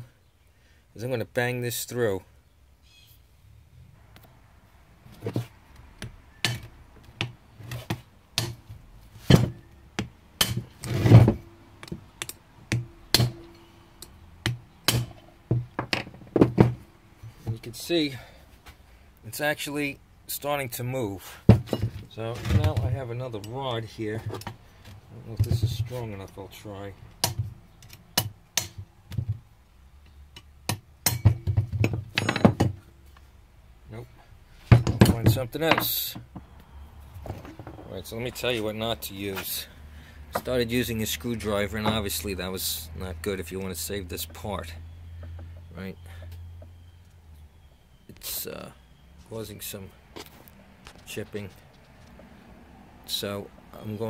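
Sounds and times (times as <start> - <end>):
hammer striking steel rod: 12.2 - 15.2, 30.7 - 31.4.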